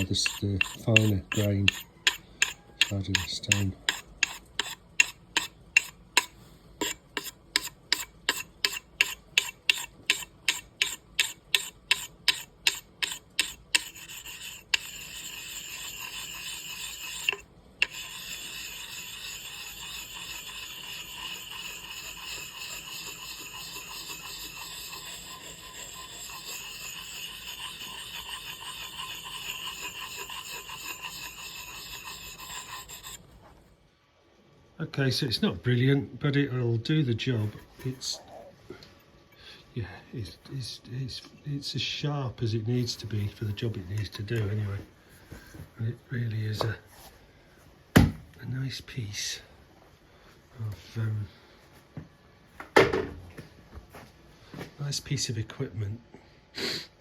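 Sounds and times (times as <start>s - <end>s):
axe blade sharpening on stone: 0.0s - 33.3s.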